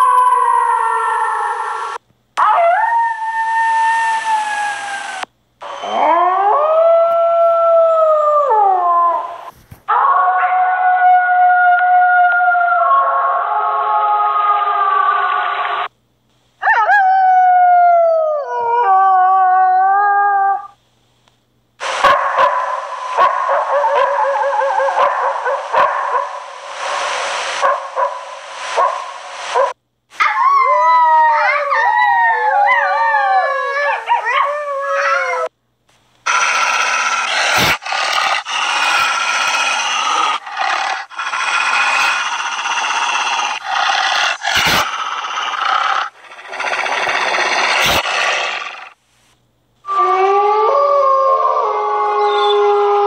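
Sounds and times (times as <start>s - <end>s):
wolves howling: 0.0s - 15.5s, 30.2s - 35.5s, 36.3s - 49.0s.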